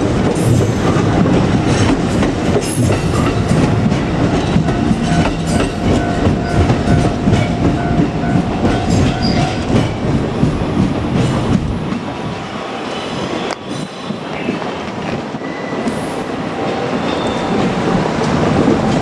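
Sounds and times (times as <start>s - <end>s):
wheels clacking over rail joints: 0.0s - 12.1s
electric train rumbling past: 0.0s - 19.0s.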